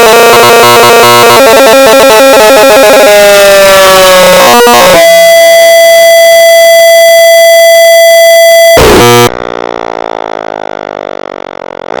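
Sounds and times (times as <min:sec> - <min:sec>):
fire truck siren winding down: 0:00.0 - 0:09.3
loud steady pitched tone: 0:00.0 - 0:09.4.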